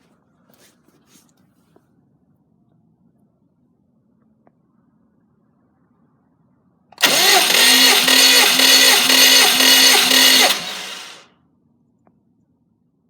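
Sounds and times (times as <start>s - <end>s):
starter motor cranking engine: 7.0s - 11.3s.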